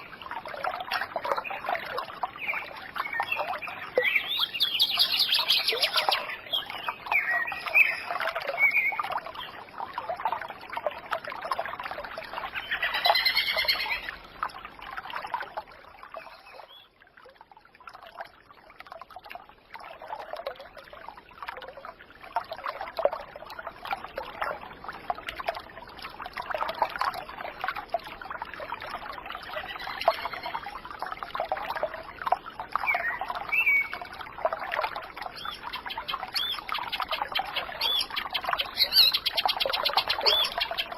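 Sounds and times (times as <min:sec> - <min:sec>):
birds chirping and calling: 0:02.5 - 0:09.0, 0:12.5 - 0:14.1, 0:29.6 - 0:30.6, 0:35.4 - 0:40.9.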